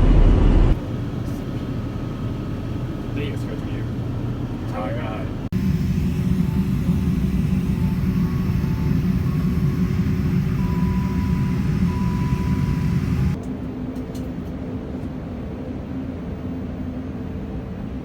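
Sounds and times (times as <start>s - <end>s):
jet airliner rumble: 0.0s - 13.4s
steady hum: 0.0s - 13.4s
faint steady tones: 5.0s - 13.4s.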